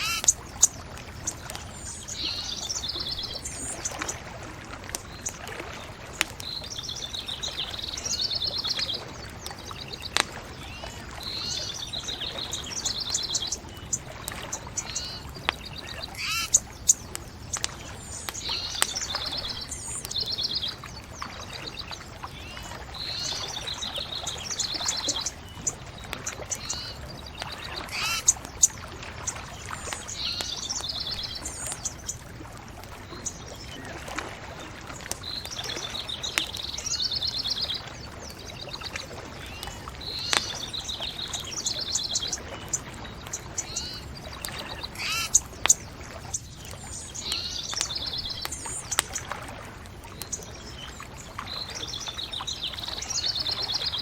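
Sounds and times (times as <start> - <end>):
songbird trilling: 0.0 - 4.2, 9.7 - 20.9, 21.6 - 32.1, 39.5 - 49.2
bonfire crackling: 0.0 - 53.6.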